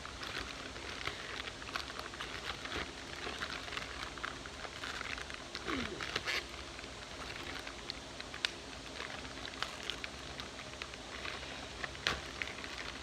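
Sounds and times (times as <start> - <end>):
packaging crinkling: 0.0 - 13.0.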